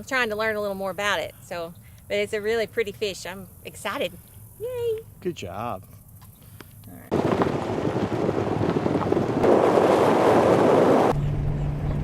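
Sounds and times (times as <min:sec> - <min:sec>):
wind buffeting microphone: 0:07.1 - 0:12.0.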